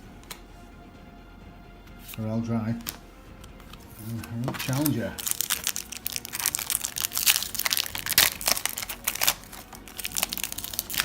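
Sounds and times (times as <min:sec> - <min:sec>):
foil wrapper crinkling: 0:04.0 - 0:11.0.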